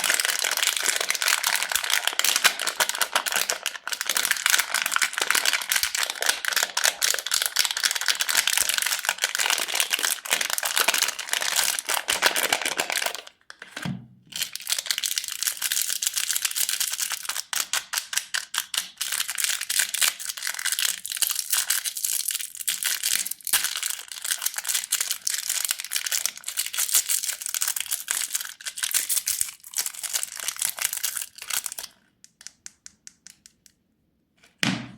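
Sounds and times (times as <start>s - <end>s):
plastic candy wrappers crinkling: 0.0s - 32.7s
soft thud: 34.6s - 34.9s.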